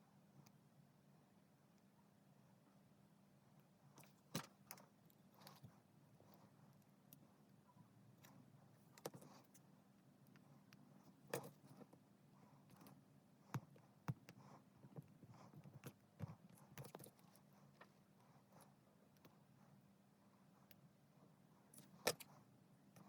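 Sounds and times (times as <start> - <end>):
keycaps clicking and tapping: 13.6 - 17.2.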